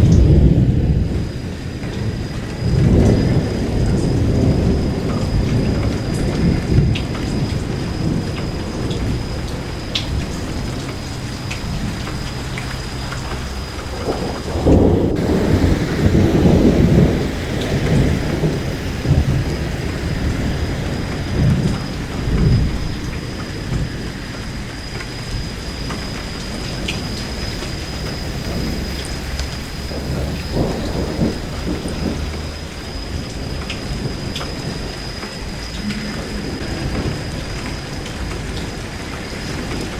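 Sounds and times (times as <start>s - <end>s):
steady rain falling: 0.0s - 39.9s
thunder rumbling: 0.0s - 39.9s.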